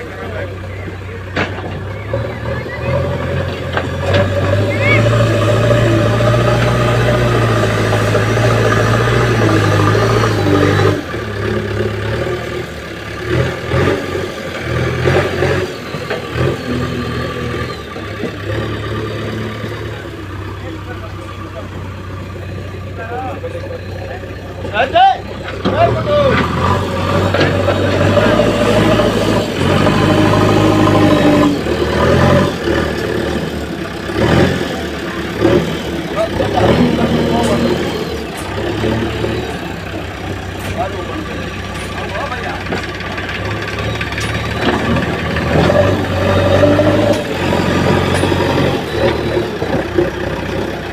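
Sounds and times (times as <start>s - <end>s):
diesel engine running: 0.0s - 50.9s
knocks and clatters: 1.2s - 2.0s, 25.4s - 30.3s, 36.6s - 50.9s.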